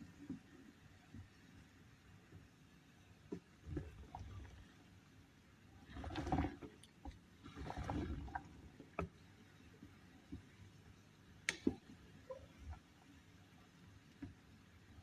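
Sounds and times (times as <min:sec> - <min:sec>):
liquid sloshing: 0:05.8 - 0:09.0.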